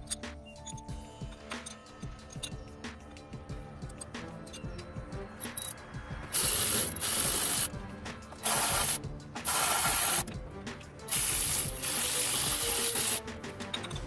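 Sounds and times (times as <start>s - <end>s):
faint background music: 0.0s - 14.0s
power ratchet bursts: 3.9s - 10.4s, 11.0s - 14.0s.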